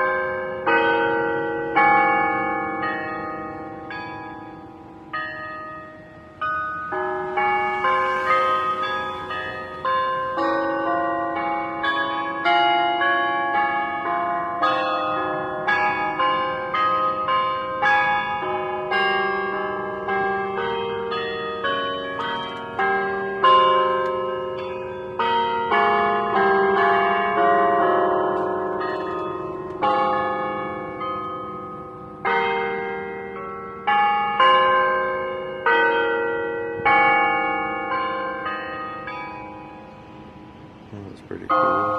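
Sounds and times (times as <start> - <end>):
bell melody: 0.0 - 41.9.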